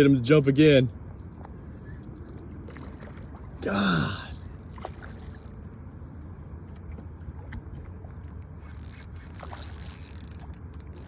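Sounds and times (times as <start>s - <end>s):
fishing reel clicking and whirring: 0.3s - 1.4s, 2.0s - 5.8s, 8.6s - 11.0s.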